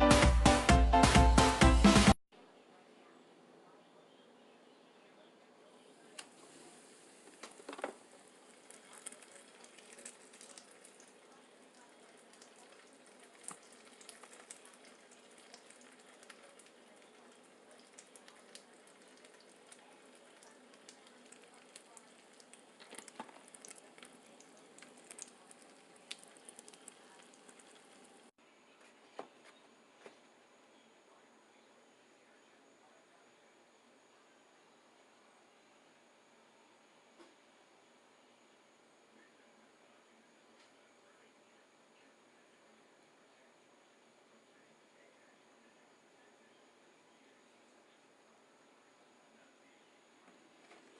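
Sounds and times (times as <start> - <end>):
chewing with wet mouth clicks: 17.8 - 28.0.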